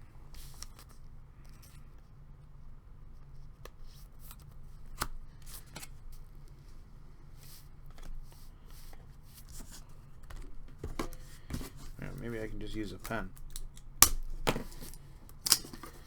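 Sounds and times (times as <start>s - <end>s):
trading cards rustling and clicking: 7.6s - 16.0s.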